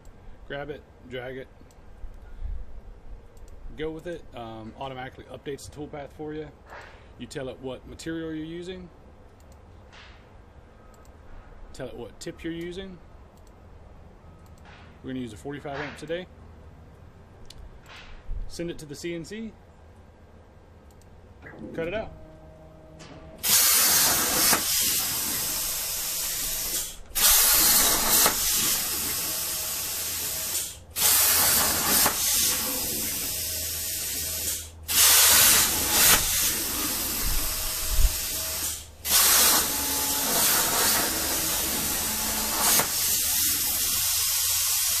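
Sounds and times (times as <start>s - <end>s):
plasma cutter arc hissing: 23.4s - 45.0s.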